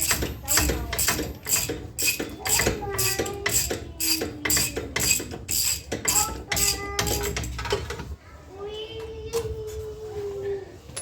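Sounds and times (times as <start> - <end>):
ratchet wrench clicking: 0.0 - 7.3.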